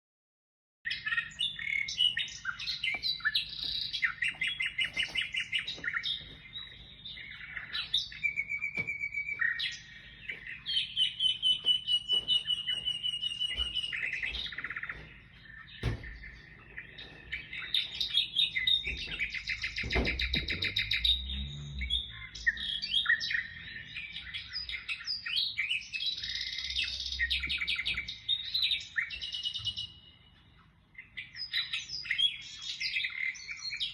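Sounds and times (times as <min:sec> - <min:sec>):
small birds chirping and trilling: 0:00.9 - 0:33.9
dull knocks: 0:15.8 - 0:16.3, 0:18.8 - 0:20.8.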